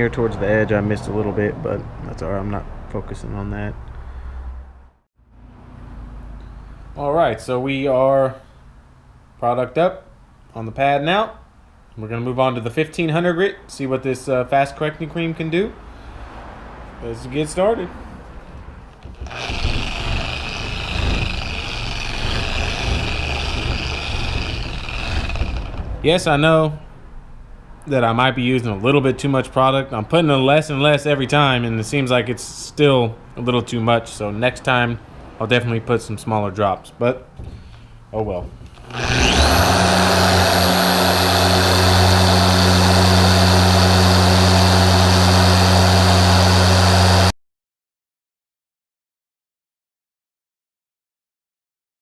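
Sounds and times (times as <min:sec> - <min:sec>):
car polisher whining: 0:19.0 - 0:25.9, 0:38.8 - 0:47.3.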